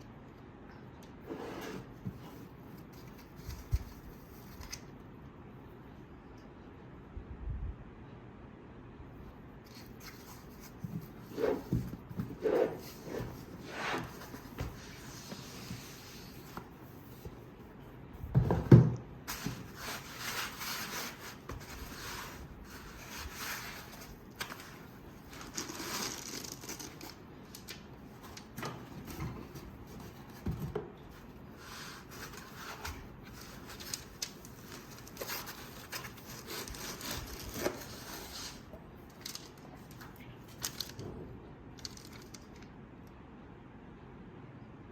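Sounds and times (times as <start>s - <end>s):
packaging rubbing and scraping: 9.7s - 17.4s, 19.3s - 28.4s, 31.1s - 39.9s.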